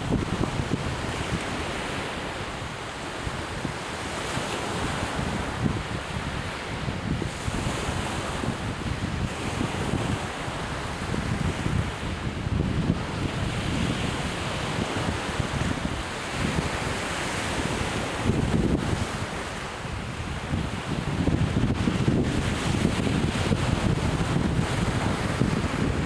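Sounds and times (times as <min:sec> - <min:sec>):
surf washing onto beach: 0:00.0 - 0:26.0
wind buffeting microphone: 0:00.0 - 0:26.0.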